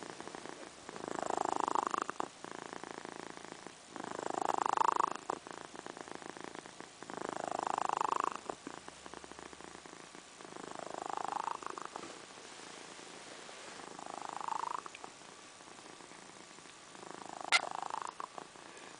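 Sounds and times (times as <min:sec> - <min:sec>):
cat snoring: 0:00.0 - 0:18.9.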